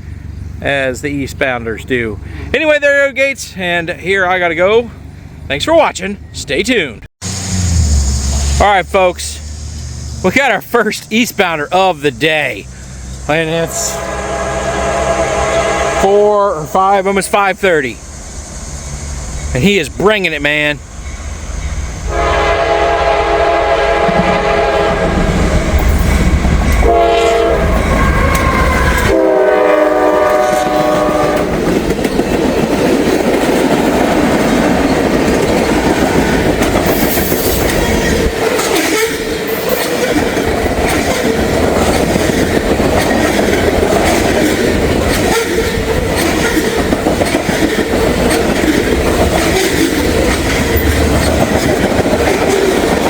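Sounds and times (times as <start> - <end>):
train cars rumbling and clacking: 0.0 - 53.0
train air horn blasts: 13.6 - 16.7, 22.1 - 25.9, 26.8 - 31.6.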